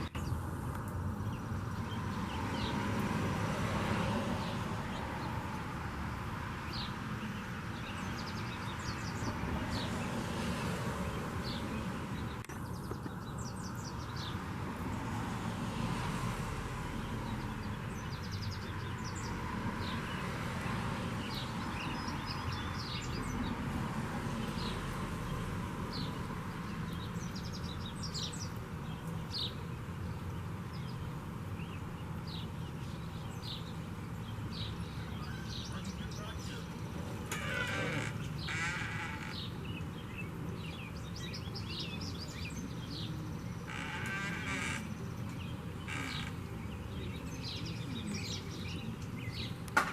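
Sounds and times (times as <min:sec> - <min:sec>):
small birds chirping: 0:00.0 - 0:15.4, 0:16.8 - 0:49.9.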